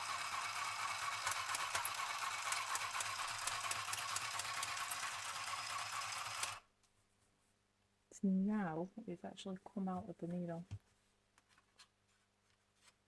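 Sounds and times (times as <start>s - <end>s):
sewing machine whirring: 0.0s - 6.6s.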